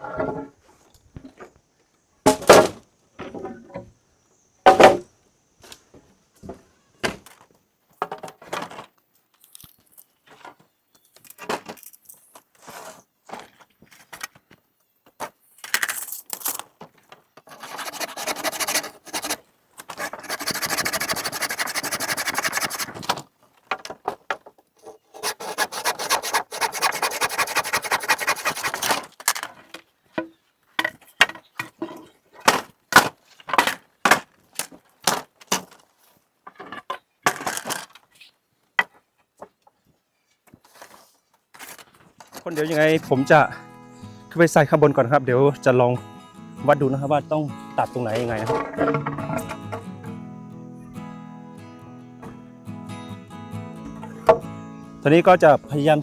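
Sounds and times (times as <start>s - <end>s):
wood knocks and clatter: 0.0s - 0.6s, 2.3s - 3.9s, 4.7s - 5.1s, 6.4s - 8.9s, 16.8s - 27.4s, 28.5s - 38.0s, 48.1s - 50.0s, 53.9s - 54.5s
wood scraping: 0.0s - 1.5s, 17.0s - 39.6s, 40.5s - 43.5s, 47.8s - 50.0s, 53.8s - 54.6s.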